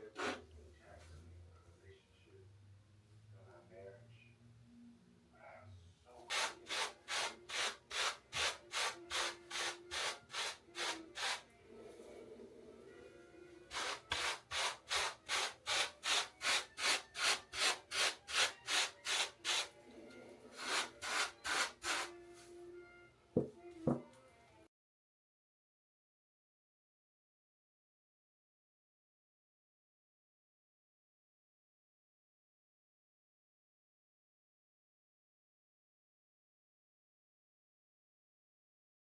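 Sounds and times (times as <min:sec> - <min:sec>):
hair brush scratching through hair: 0:06.3 - 0:11.4, 0:13.7 - 0:19.7, 0:20.6 - 0:22.1.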